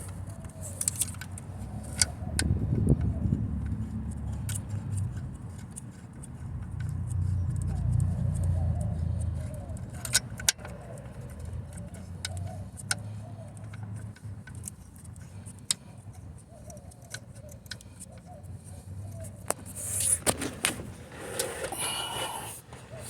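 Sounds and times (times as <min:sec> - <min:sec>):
metallic clicks of hand tools: 0:00.1 - 0:02.5, 0:03.6 - 0:18.4.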